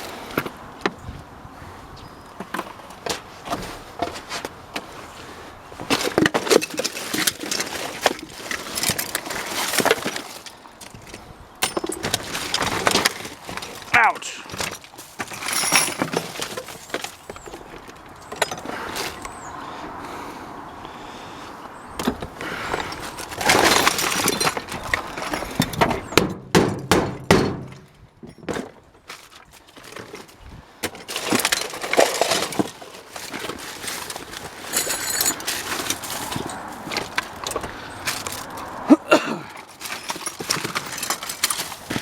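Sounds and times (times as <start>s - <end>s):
scrap debris clattering: 23.0s - 25.9s.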